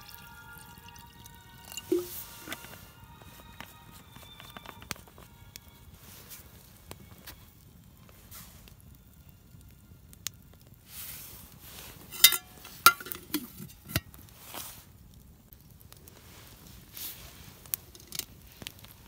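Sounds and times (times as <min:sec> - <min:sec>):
metallic clinks of cookware: 0:12.1 - 0:14.0.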